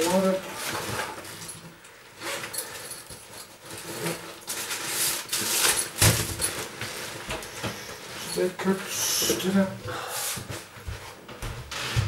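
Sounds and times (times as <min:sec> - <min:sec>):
rustling and handling noises: 0:00.0 - 0:12.0.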